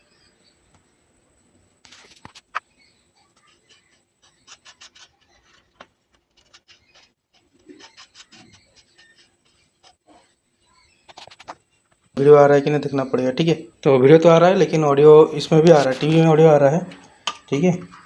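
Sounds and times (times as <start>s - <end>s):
wires and circuit board handled: 15.7s - 16.4s.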